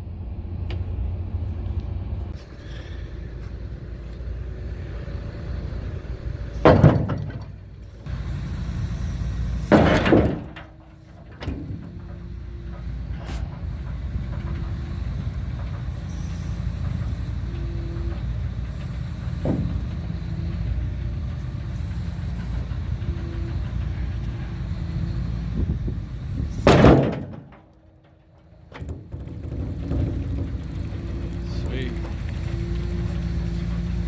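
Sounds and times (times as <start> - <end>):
diesel engine running: 0.0 - 34.0
loud bang: 26.5 - 27.7.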